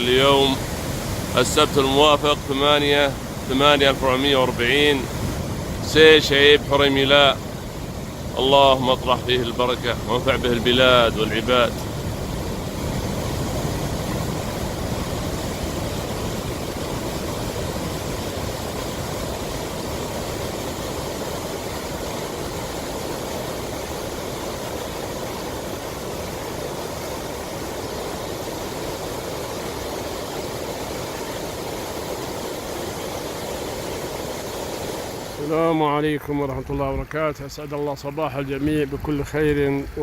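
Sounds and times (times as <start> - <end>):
floodwater rushing: 0.0 - 36.7.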